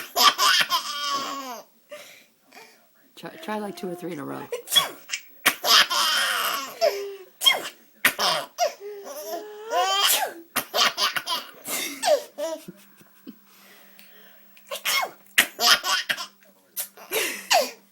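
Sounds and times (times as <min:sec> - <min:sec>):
baby laughing: 0:00.0 - 0:01.6, 0:03.4 - 0:07.1, 0:08.1 - 0:12.7, 0:15.4 - 0:16.3.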